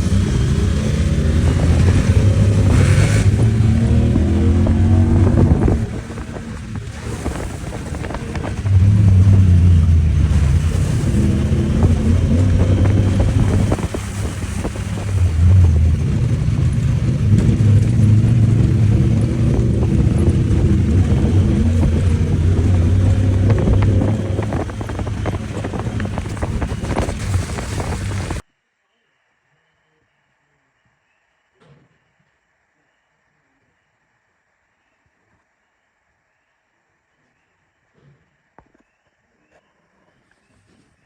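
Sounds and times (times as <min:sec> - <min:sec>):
off-road vehicle engine revving: 0:00.0 - 0:28.4
wind buffeting microphone: 0:00.0 - 0:28.4.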